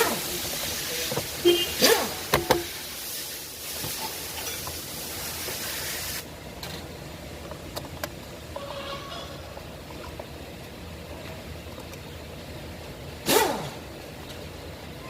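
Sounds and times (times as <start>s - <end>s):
steady hiss: 0.0s - 6.4s
tools and parts knocking: 2.3s - 2.7s.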